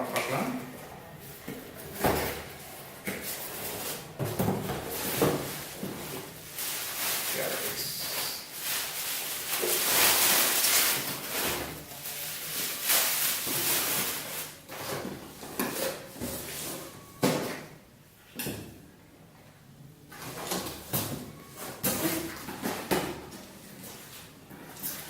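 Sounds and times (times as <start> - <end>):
packaging scraping and rustling: 3.2 - 17.0.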